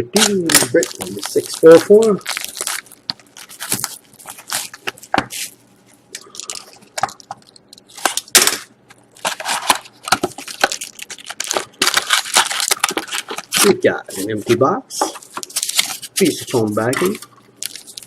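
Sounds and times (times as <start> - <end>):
wrapping crinkling and tearing: 0.1 - 14.4, 15.2 - 18.0
cardboard and packs rustling: 0.2 - 5.6, 9.2 - 18.0.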